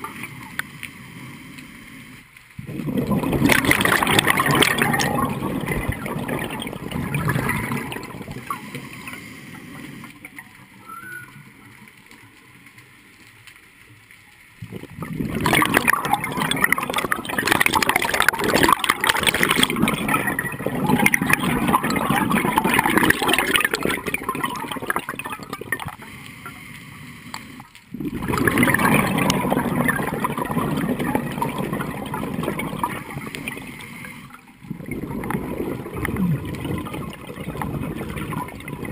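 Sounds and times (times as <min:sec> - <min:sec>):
bubbles gurgling underwater: 0:02.6 - 0:09.2, 0:14.6 - 0:26.1, 0:27.9 - 0:38.9.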